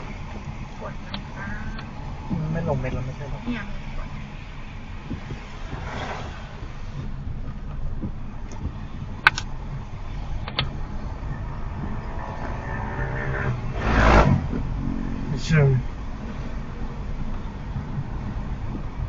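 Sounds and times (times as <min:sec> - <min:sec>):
road and tyre rumble in car: 0:00.0 - 0:19.0
sharp clicks: 0:09.2 - 0:09.5, 0:10.4 - 0:10.7.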